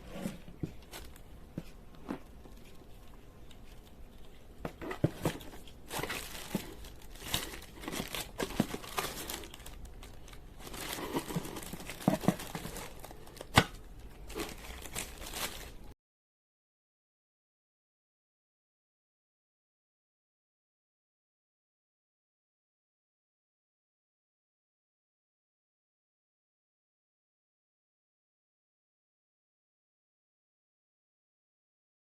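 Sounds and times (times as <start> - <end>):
plastic packaging crinkling: 2.2 - 15.9.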